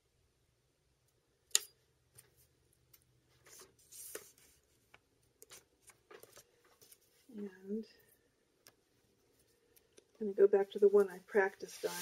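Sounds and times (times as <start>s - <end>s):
paper rustle: 3.3s - 7.3s, 10.8s - 12.0s.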